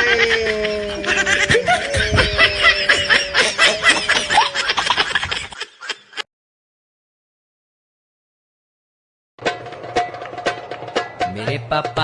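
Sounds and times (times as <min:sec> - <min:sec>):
high chuckles and snickers: 0:00.0 - 0:06.2.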